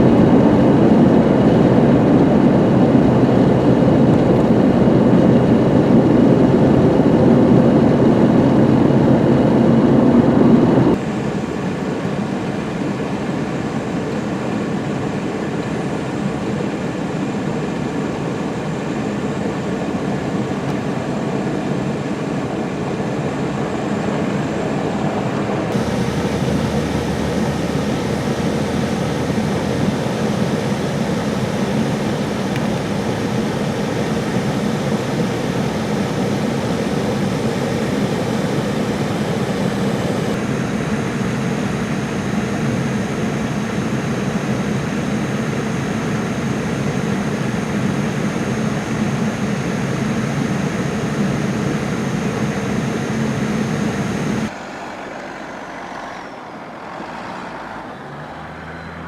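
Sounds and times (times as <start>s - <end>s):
vehicle road and engine noise: 24.1s - 59.0s
thin high whine: 25.5s - 54.5s.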